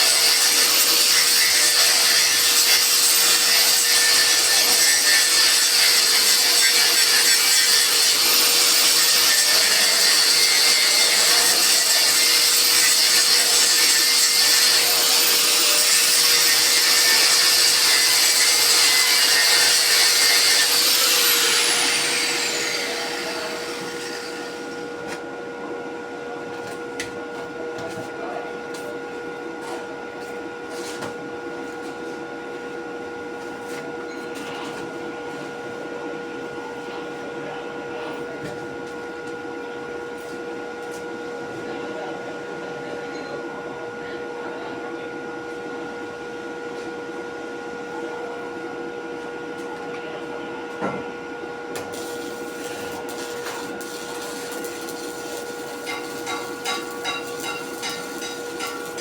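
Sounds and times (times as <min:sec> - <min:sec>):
grinder whining: 0:00.0 - 0:25.0, 0:51.8 - 0:59.0.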